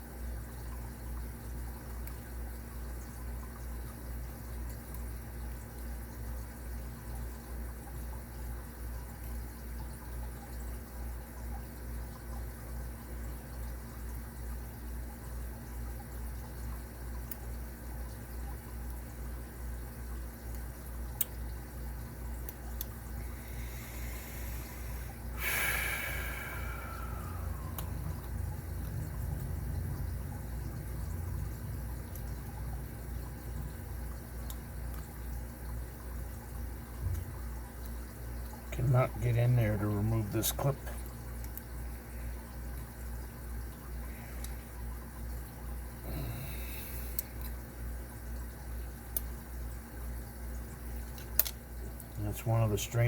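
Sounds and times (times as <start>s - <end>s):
steady low hum: 0.0s - 53.0s
pulsing low hum: 21.5s - 39.3s
even hiss: 23.3s - 27.8s.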